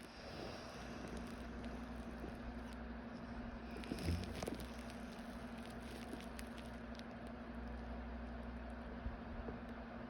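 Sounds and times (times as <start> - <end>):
room noise hum and hiss: 0.0 - 10.0.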